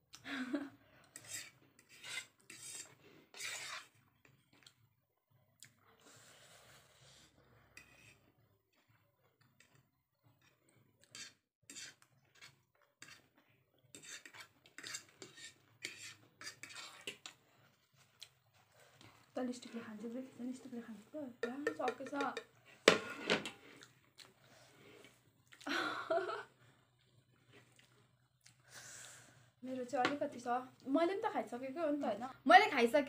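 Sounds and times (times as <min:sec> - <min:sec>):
cutlery clinking and scraping on plates: 0:14.0 - 0:17.4, 0:21.4 - 0:23.6.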